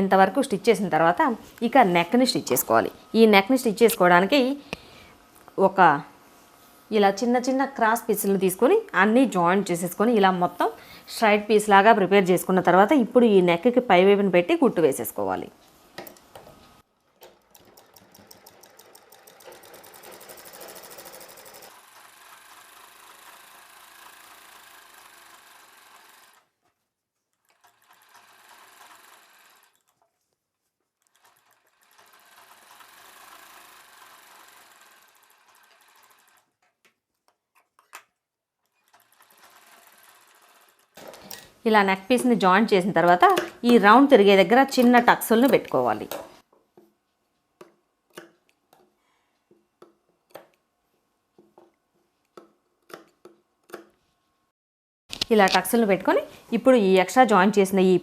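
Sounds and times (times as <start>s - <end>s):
sewing machine stitching: 17.0s - 26.6s, 27.4s - 30.2s, 31.0s - 36.8s, 38.6s - 41.5s.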